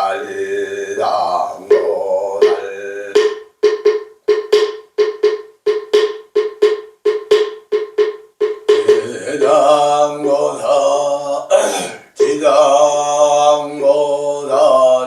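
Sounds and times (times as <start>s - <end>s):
man chanting: 0.0s - 3.2s, 8.8s - 15.0s
hollow wooden fish knocks: 3.2s - 9.1s.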